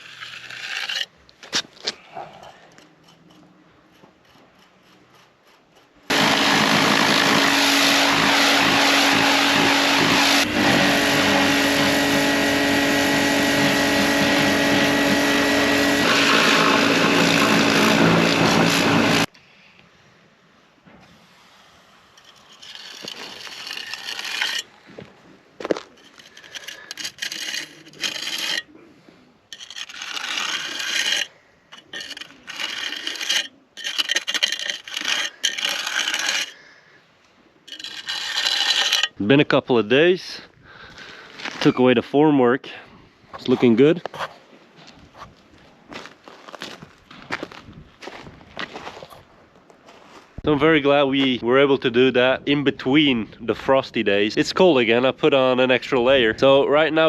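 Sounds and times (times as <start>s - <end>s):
tool scraping concrete: 0.0s - 19.3s, 22.1s - 28.9s, 29.5s - 36.6s, 37.7s - 39.4s
machine humming loudly: 6.1s - 19.3s.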